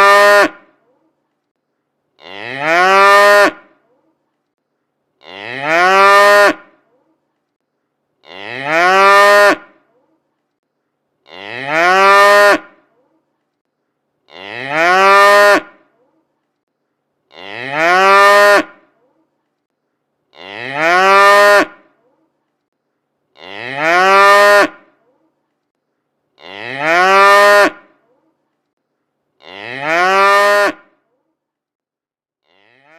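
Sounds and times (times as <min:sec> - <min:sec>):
cow mooing: 0:29.4 - 0:30.9, 0:32.4 - 0:32.9.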